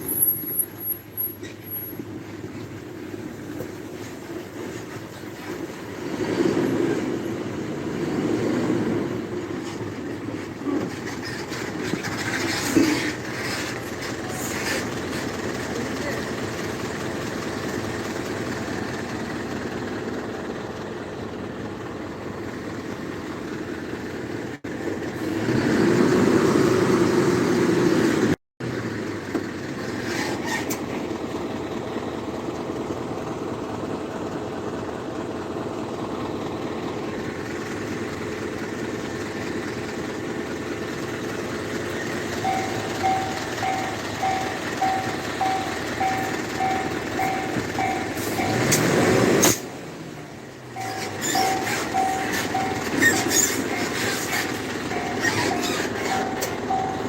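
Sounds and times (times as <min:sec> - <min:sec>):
train running: 0:00.0 - 0:23.8, 0:36.2 - 0:57.0
level crossing warning bell: 0:42.2 - 0:49.0, 0:50.7 - 0:57.0.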